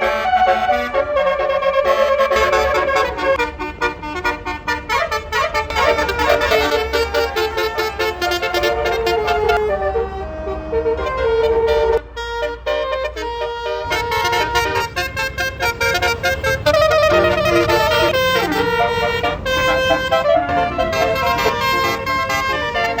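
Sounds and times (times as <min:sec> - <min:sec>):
musical air horn melody: 0:00.0 - 0:23.0.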